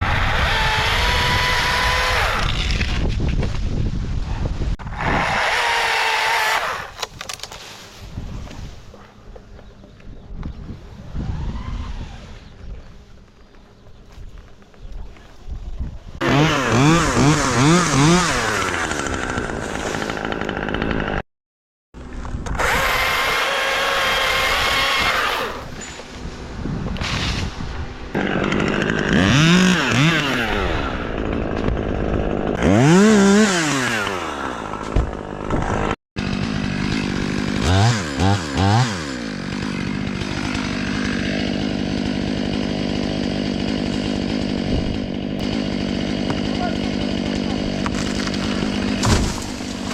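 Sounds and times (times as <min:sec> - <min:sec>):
chainsaw revving: 0:00.0 - 0:03.0, 0:04.9 - 0:07.1, 0:16.2 - 0:21.2, 0:22.5 - 0:25.8, 0:28.1 - 0:49.9
chainsaw running at high speed: 0:00.0 - 0:03.0, 0:04.9 - 0:07.0, 0:16.2 - 0:21.2, 0:22.0 - 0:25.8, 0:28.1 - 0:49.9.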